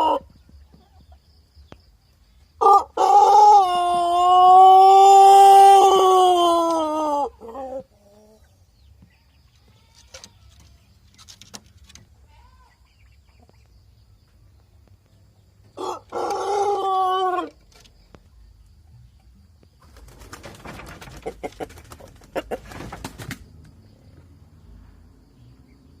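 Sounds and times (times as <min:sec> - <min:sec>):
rooster crowing: 0:02.6 - 0:07.8, 0:15.8 - 0:17.6.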